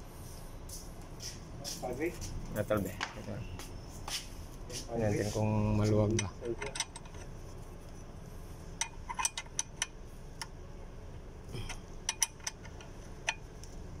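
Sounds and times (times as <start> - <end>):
steady low hum: 0.0 - 14.0
tools clinking on metal: 6.0 - 7.3, 11.6 - 13.4.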